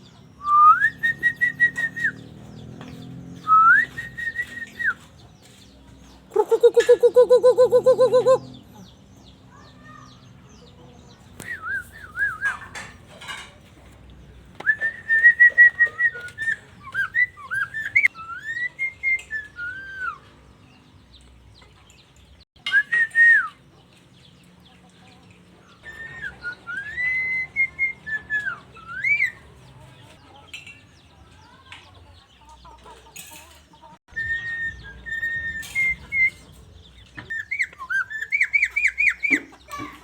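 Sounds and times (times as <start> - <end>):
starling whistling: 0.4 - 2.4, 3.4 - 5.0, 11.4 - 12.8, 14.6 - 20.3, 25.8 - 29.4, 34.1 - 39.5.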